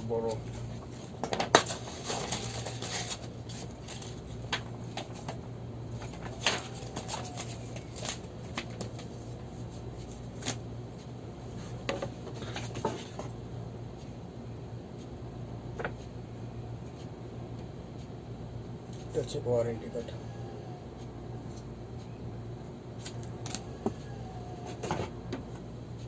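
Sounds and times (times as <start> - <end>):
steady low hum: 0.0 - 26.0
paper and packaging rustling: 1.4 - 5.3, 6.0 - 9.4.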